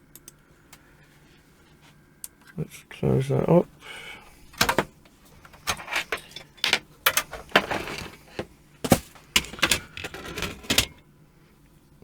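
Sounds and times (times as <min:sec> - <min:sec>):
computer case parts clicking: 0:04.6 - 0:11.0.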